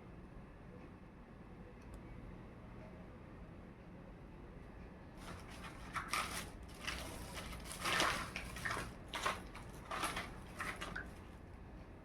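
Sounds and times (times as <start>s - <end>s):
plastic packaging crinkling: 5.2s - 11.2s.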